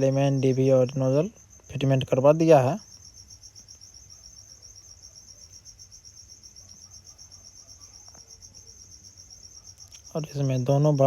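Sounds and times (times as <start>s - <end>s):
high-pitched insect trill: 0.0s - 11.0s.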